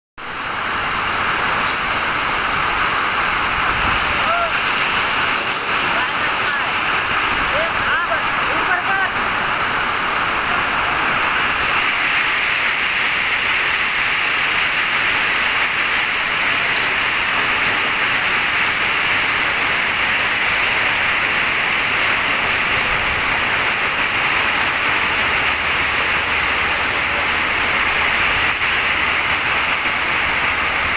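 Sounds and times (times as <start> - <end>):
falling water rushing: 0.2 - 30.9.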